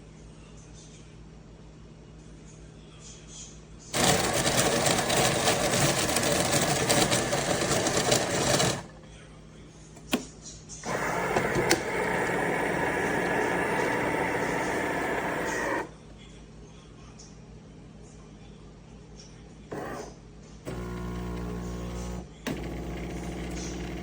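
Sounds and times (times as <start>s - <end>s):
steady machine hum: 3.9s - 16.3s, 19.6s - 24.0s
coffee maker motor running: 4.0s - 9.0s, 10.8s - 16.0s, 19.7s - 20.1s, 20.7s - 24.0s
coffee maker click: 10.9s - 15.8s.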